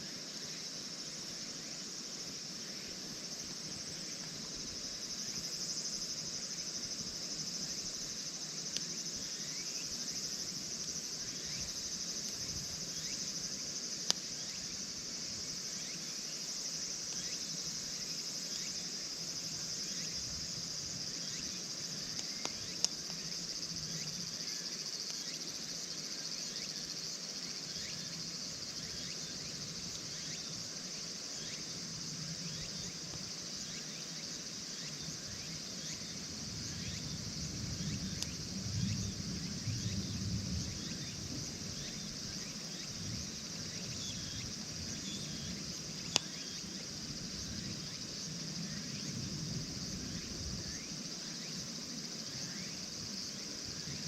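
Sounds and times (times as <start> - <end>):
high-pitched insect chorus: 0.0 - 54.0
campfire crackling: 21.8 - 23.6.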